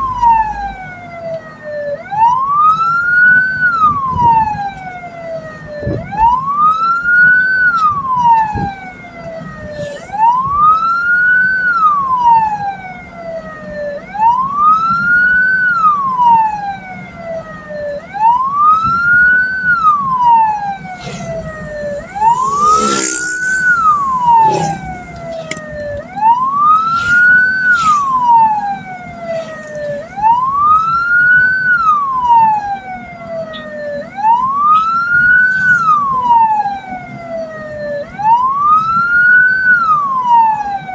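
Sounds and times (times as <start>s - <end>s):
electronic wail siren: 0.0s - 40.9s
low vehicle hum: 3.6s - 40.9s
brief loud noise: 22.1s - 25.0s.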